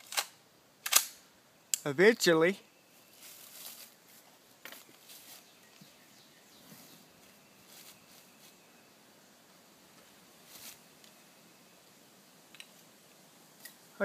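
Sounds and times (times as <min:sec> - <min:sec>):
soft rustles: 0:03.0 - 0:06.0, 0:06.6 - 0:08.7, 0:09.9 - 0:11.1.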